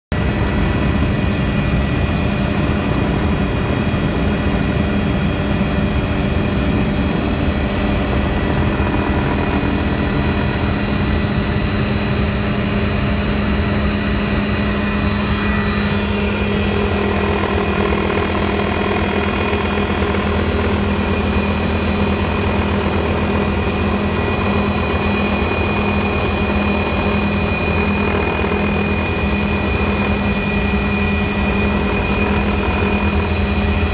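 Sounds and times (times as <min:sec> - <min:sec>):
helicopter engine and rotor drone: 0:00.1 - 0:33.9.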